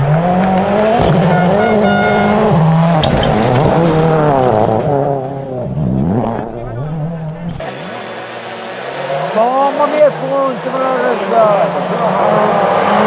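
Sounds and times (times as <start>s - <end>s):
rally car engine revving: 0.0s - 13.0s.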